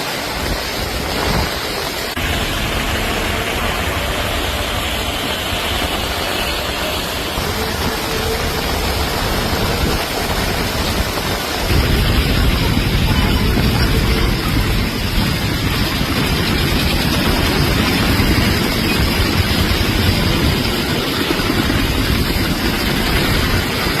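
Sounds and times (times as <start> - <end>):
heavy rain pouring: 0.0 - 24.0
low rumble: 0.4 - 24.0.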